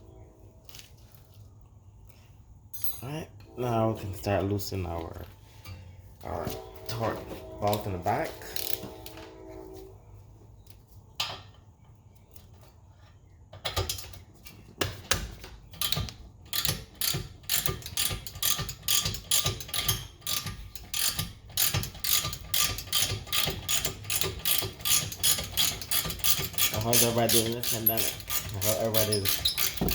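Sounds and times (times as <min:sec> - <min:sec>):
ratchet wrench clicking: 0:15.8 - 0:29.9.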